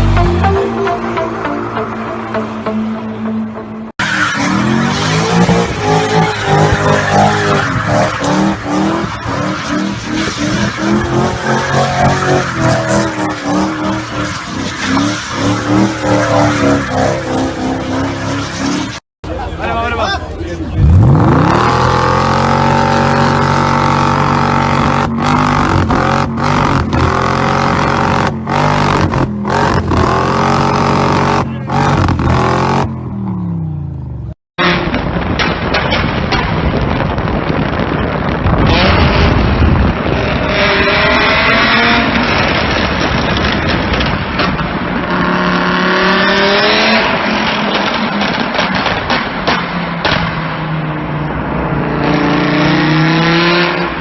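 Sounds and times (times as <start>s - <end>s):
car engine revving: 4.2s - 19.0s, 20.7s - 35.0s.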